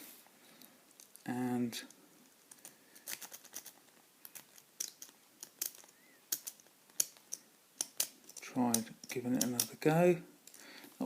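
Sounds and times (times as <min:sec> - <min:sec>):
lock pick clicking and scraping: 0:02.5 - 0:09.8.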